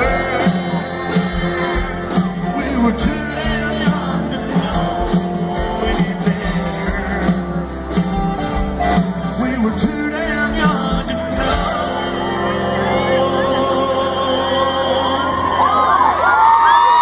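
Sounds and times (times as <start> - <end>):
steady drum beat: 0.0 - 12.2
person singing: 0.0 - 16.2
guitars: 0.0 - 16.9
live country band playing: 0.0 - 17.0.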